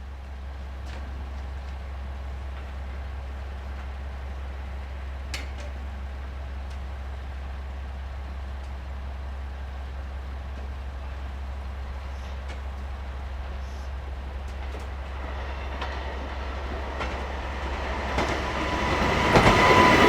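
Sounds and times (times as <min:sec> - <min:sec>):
low engine drone: 0:11.0 - 0:20.0.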